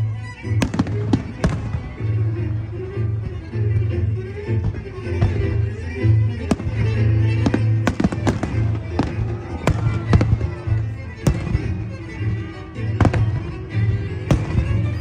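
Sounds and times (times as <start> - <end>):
fireworks bangs: 0.6 - 2.2, 4.6 - 12.4, 13.0 - 15.0.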